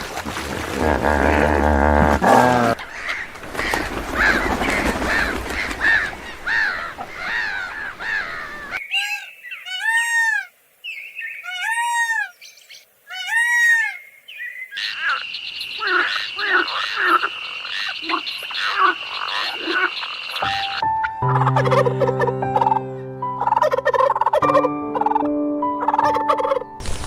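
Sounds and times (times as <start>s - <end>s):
background noise: 0.2s - 20.4s
birds calling: 2.7s - 26.6s.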